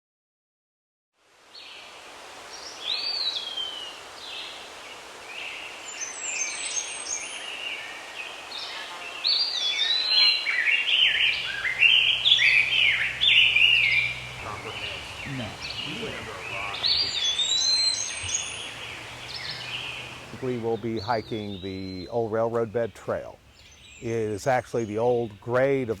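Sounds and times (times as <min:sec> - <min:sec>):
outdoor background hiss: 0:01.2 - 0:26.0
birds chirping: 0:02.5 - 0:26.0
low steady hum: 0:11.0 - 0:25.0.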